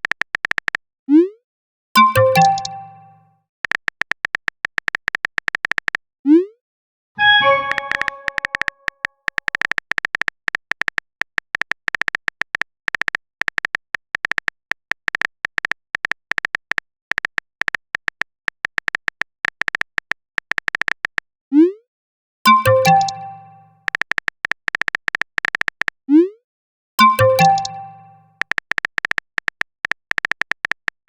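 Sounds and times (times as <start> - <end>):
phone keyboard typing clicks: 0.0 - 0.8, 2.0 - 6.0, 7.4 - 21.2, 22.5 - 26.0, 27.0 - 31.0
notification chime: 2.0 - 3.2, 7.2 - 8.7, 22.5 - 23.8, 27.0 - 28.3.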